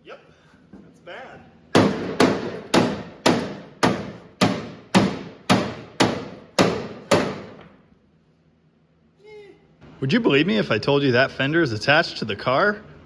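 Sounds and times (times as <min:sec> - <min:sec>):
hammer striking sheet metal: 0:01.8 - 0:07.7.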